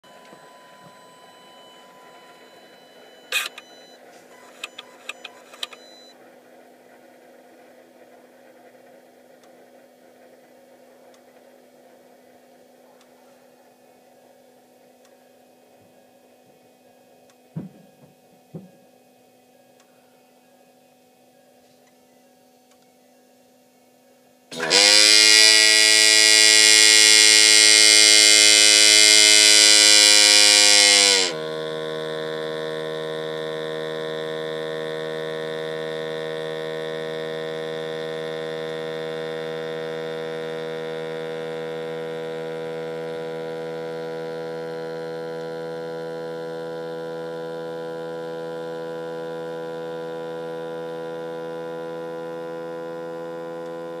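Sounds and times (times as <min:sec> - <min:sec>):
low steady hum: 0:00.0 - 0:53.0
harsh electric buzz: 0:24.5 - 0:54.0.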